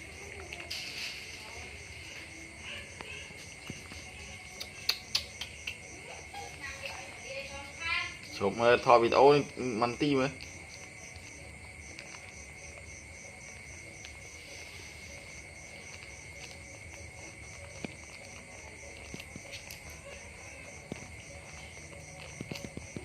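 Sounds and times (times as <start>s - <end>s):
insects chirping: 0.0s - 23.0s
faint clicks and ticks: 10.0s - 23.0s.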